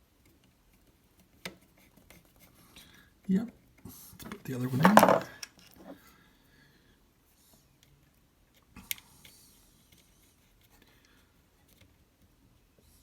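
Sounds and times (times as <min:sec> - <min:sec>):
light ticks of small parts: 0:00.0 - 0:03.8, 0:07.7 - 0:12.8.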